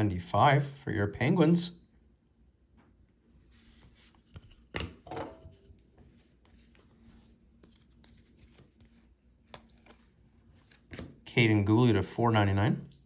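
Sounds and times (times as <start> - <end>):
trading cards sliding: 3.4 - 11.3
card scraping: 3.5 - 11.3.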